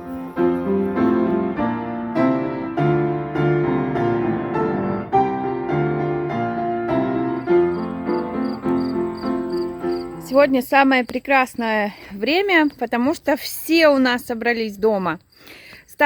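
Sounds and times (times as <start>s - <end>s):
piano music: 0.0s - 10.7s.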